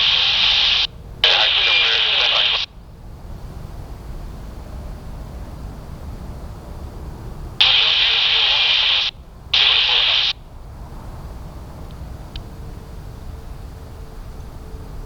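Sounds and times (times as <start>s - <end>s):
radio hiss bursts: 0.0s - 2.7s, 7.6s - 10.4s
low airport rumble: 0.0s - 15.0s.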